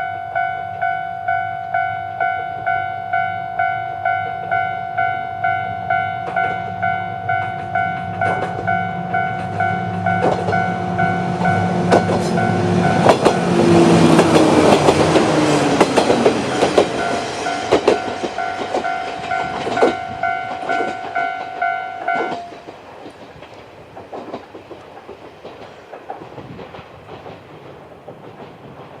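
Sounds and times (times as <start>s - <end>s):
level crossing alarm dinging: 0.0s - 14.2s, 15.4s - 22.6s
diesel train engine: 0.0s - 29.0s
wheels clattering over rail joints: 5.9s - 29.0s.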